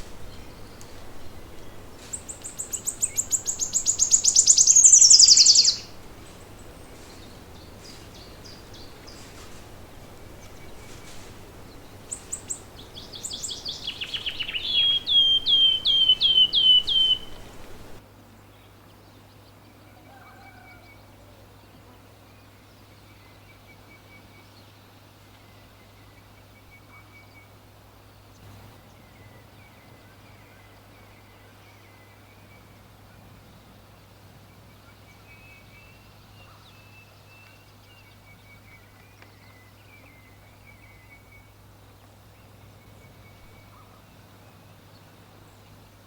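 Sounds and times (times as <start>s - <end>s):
bird song of sliding notes: 0.0s - 18.0s
faint bird calls: 0.0s - 18.0s
bird high trill: 1.8s - 18.0s.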